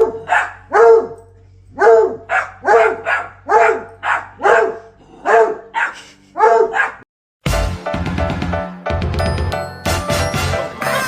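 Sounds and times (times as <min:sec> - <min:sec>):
dog barking loudly: 0:00.0 - 0:01.2, 0:01.8 - 0:07.0.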